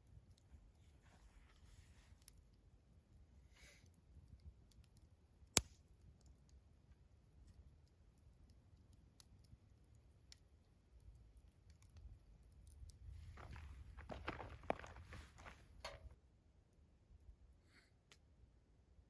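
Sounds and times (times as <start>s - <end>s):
small clicks and ticks: 7.4s - 13.0s.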